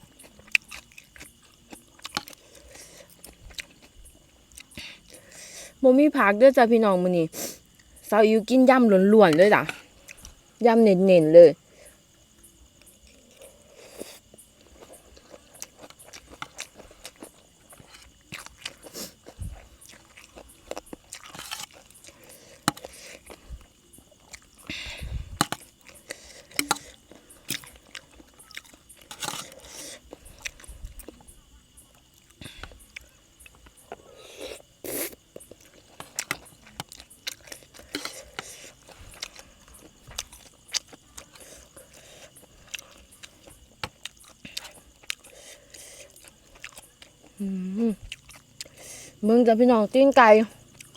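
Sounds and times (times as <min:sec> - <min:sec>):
crunchy chewing: 0:00.0 - 0:05.8, 0:07.3 - 0:10.6, 0:11.6 - 0:49.2, 0:50.2 - 0:50.9
crickets chirring: 0:00.0 - 0:50.9.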